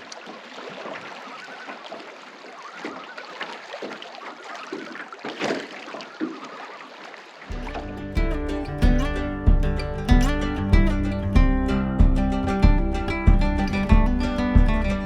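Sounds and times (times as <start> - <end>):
water splashing around canoe: 0.0 - 15.0
acoustic guitar music: 7.5 - 15.0.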